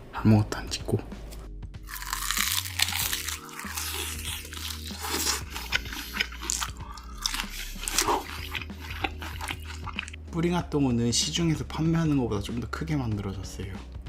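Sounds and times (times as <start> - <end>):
background music: 0.0 - 14.0
crunchy bites and chewing: 1.8 - 10.2.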